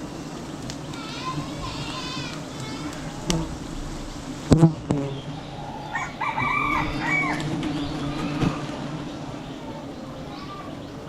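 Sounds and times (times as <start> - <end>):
bees buzzing: 0.0 - 11.0
rooster crowing: 5.5 - 7.6.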